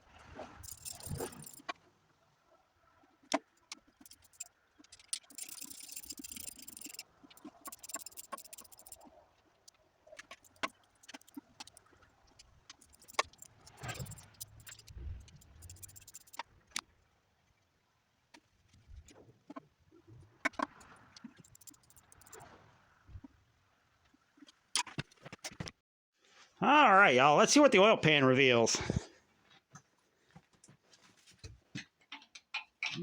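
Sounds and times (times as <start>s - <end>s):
metal tools clinking and clattering: 0.6s - 1.6s, 4.0s - 9.1s, 12.8s - 16.4s
rapid dense clicking: 3.7s - 9.1s, 10.2s - 11.8s, 12.7s - 16.4s, 20.5s - 22.4s.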